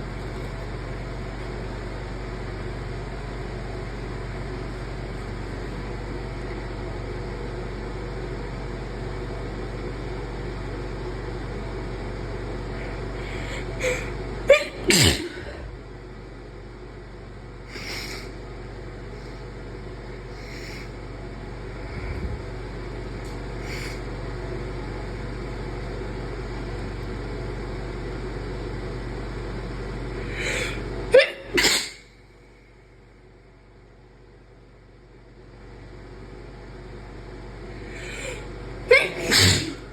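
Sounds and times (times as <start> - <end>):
steady background hum: 0.0 - 39.9
person sneezing: 13.4 - 15.7, 30.4 - 32.1, 38.0 - 39.9
quick breaths: 20.3 - 21.0, 30.2 - 30.8, 37.8 - 39.9.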